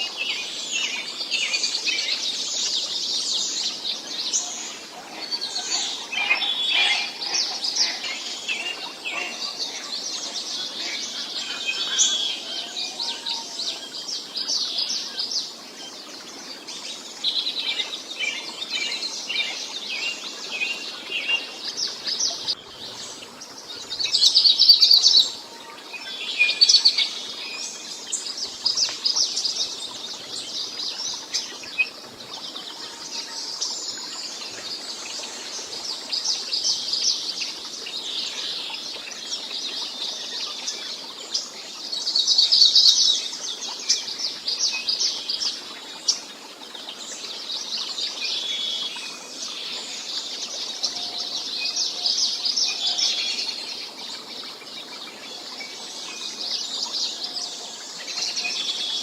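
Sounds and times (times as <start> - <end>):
birds chirping and trilling: 0.0 - 41.5.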